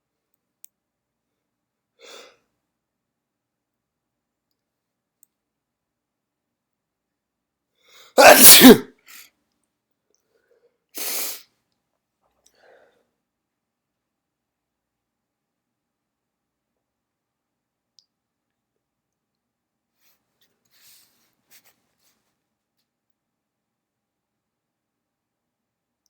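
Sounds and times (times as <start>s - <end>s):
person sneezing: 8.2s - 8.9s, 11.0s - 11.4s.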